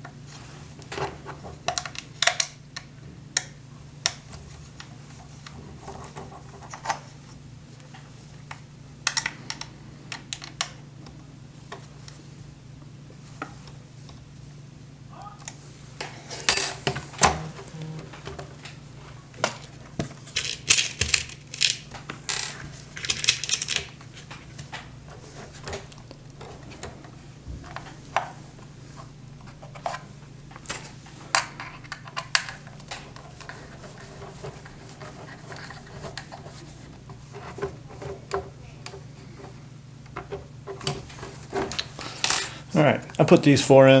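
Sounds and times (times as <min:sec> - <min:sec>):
steady low hum: 0:00.0 - 0:44.0
screws and key clinking: 0:20.4 - 0:23.9.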